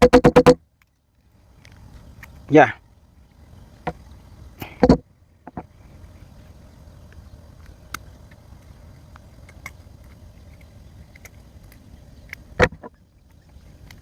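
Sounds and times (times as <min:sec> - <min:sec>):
steady low rumble: 0:01.0 - 0:14.0.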